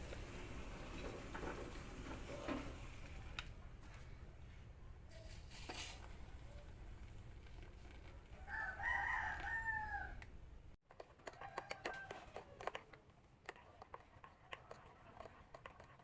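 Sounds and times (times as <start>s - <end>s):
rooster crowing: 8.4s - 10.3s, 11.4s - 12.4s.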